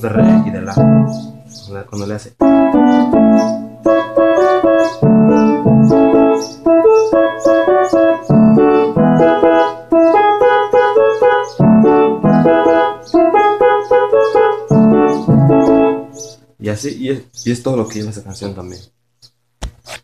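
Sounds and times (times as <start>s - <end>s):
electronic keyboard melody: 0.0s - 1.8s, 2.4s - 16.6s
low keyboard bass notes: 0.0s - 16.9s.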